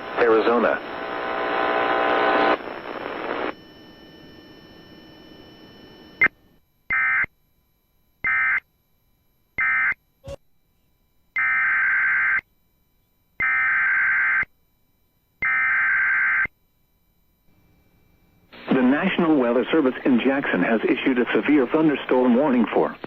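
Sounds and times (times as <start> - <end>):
harsh buzzing data bursts: 0.0 - 7.4
low steady broadcast hum: 0.0 - 23.0.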